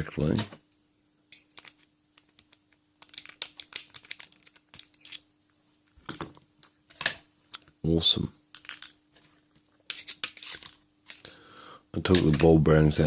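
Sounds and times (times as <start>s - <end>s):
small metal parts clicking: 1.3s - 5.3s, 9.9s - 11.3s.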